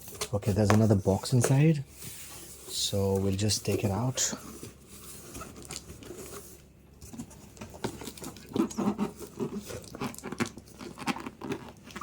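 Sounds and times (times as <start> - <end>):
squeaky cardboard scrapes: 8.1 - 12.0.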